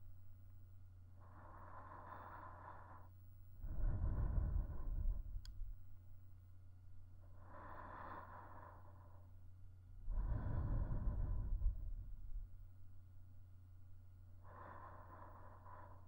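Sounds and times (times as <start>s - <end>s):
faint low hum: 0.0s - 16.0s
woman breathing slowly: 1.2s - 6.0s, 7.2s - 12.9s, 14.3s - 16.0s
faint click: 5.4s - 5.6s.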